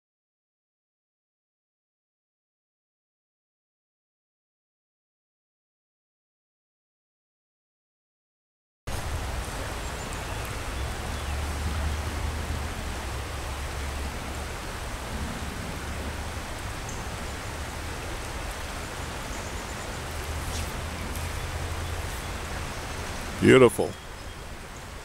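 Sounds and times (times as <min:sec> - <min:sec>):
river water rushing: 0:08.9 - 0:25.0.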